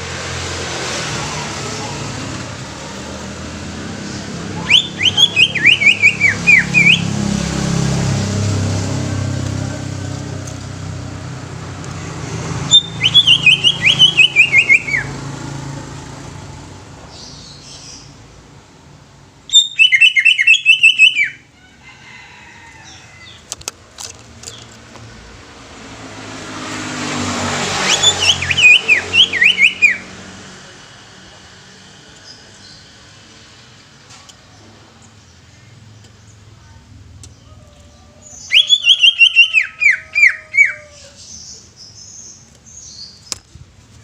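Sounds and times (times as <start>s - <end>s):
low engine rumble: 0.0s - 19.4s
bird singing whistled notes: 4.6s - 7.1s, 12.7s - 15.1s, 19.5s - 21.4s, 27.8s - 30.0s, 38.2s - 40.8s.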